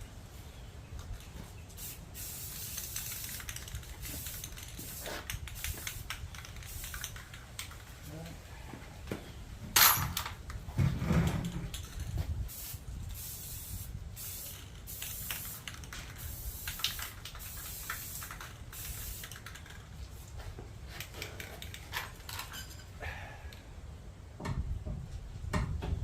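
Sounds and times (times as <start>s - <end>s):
spray can hissing: 1.7s - 7.8s, 12.5s - 20.3s.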